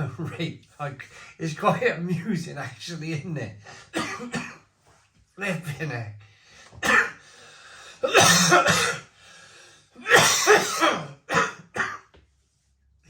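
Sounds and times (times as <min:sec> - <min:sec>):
man coughing harshly: 0:03.7 - 0:04.6, 0:06.8 - 0:07.3, 0:08.0 - 0:09.2, 0:10.0 - 0:12.1
noisy breaths drawn in: 0:06.3 - 0:08.0, 0:09.1 - 0:10.0.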